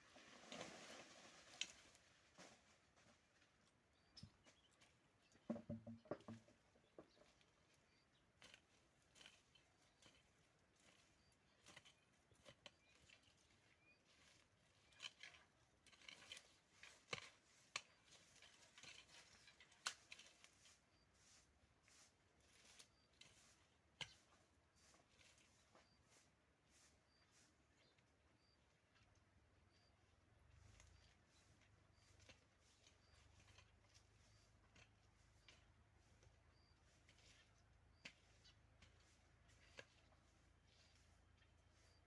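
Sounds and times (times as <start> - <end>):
faint clicks and rustles: 30.5 - 42.0.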